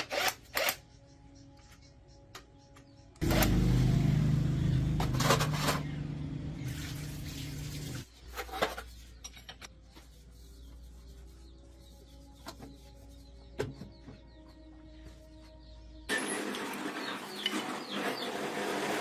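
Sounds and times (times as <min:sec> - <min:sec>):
engine running: 0:03.2 - 0:08.0.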